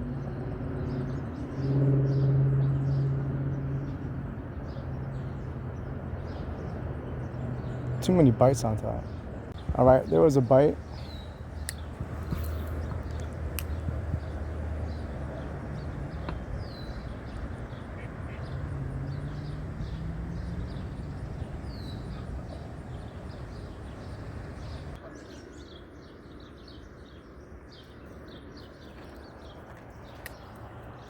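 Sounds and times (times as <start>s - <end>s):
birds chirping and calling: 7.3s - 25.7s
low steady rumble: 10.8s - 25.0s.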